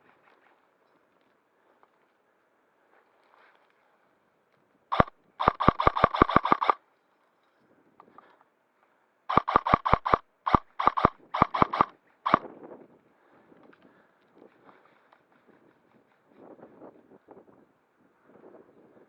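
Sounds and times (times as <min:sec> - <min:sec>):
airsoft gun firing: 0:04.9 - 0:06.8, 0:09.3 - 0:12.4.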